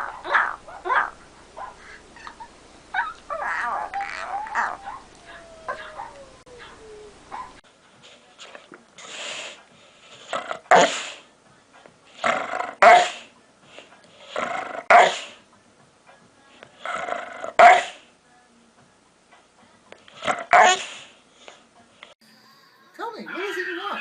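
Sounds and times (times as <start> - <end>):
dog barking: 0.0 - 7.6, 10.7 - 11.1, 12.8 - 13.2, 14.8 - 15.4, 17.5 - 18.0, 20.3 - 21.0
dog rough noisy vocalising: 0.0 - 7.6, 10.1 - 11.2, 14.2 - 15.4, 20.1 - 21.2.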